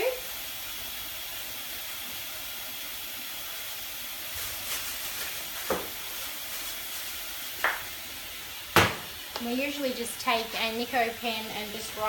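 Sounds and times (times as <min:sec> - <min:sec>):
steady hiss: 0:00.0 - 0:12.0
plastic cover knock: 0:05.6 - 0:06.0, 0:07.6 - 0:07.9, 0:08.7 - 0:09.1.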